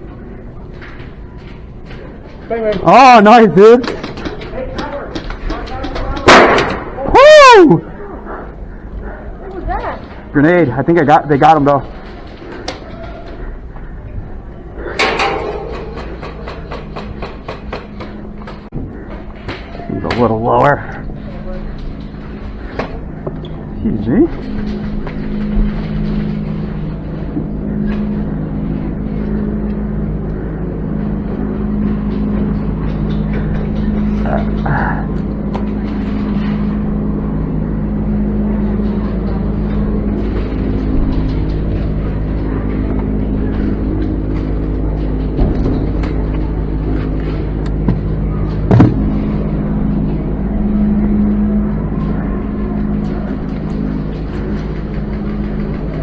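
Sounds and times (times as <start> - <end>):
low mechanical hum: 0.0 - 56.0
airsoft gun shots: 6.3 - 6.9
low drone of stacked tones: 7.8 - 56.0.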